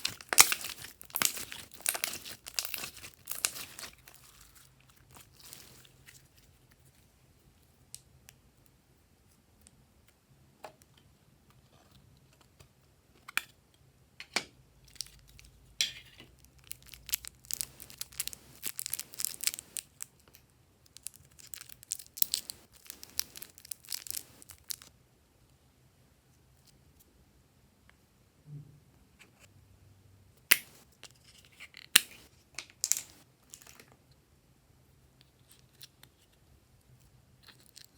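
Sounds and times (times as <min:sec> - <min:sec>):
slime sticky clicks and crackles: 0:00.0 - 0:04.2.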